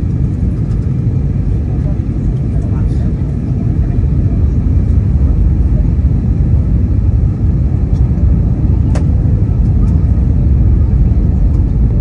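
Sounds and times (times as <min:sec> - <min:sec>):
airliner cabin roar: 0:00.0 - 0:12.0
small click: 0:08.9 - 0:10.0.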